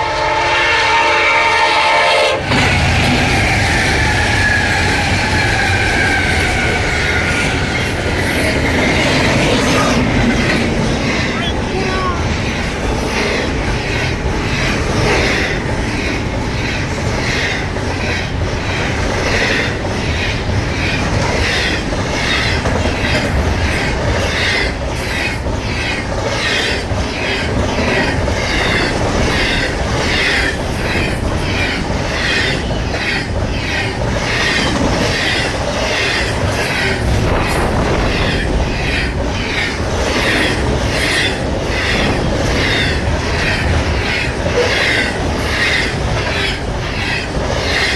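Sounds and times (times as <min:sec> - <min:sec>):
freight train wheels clacking: 0:00.0 - 0:47.9
train rumble: 0:00.0 - 0:47.9.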